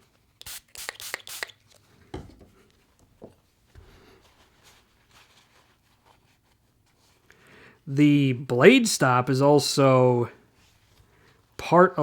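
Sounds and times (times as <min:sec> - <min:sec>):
hissing spray bursts: 0:00.4 - 0:01.6.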